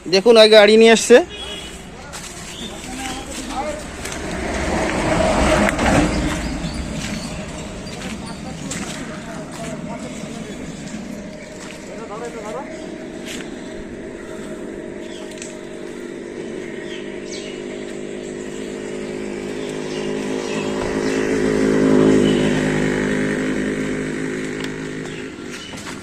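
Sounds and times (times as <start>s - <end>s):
vehicle engine approaching: 0.0s - 26.0s.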